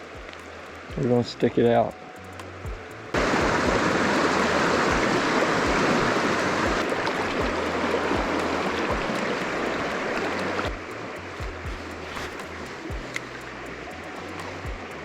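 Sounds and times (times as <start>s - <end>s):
river water rushing over rocks: 3.1s - 15.0s.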